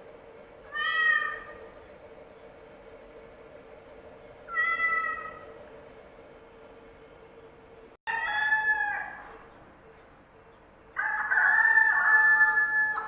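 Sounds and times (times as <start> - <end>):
faint steady hum: 0.0 - 13.0
cat meowing: 0.7 - 1.6, 4.5 - 5.5.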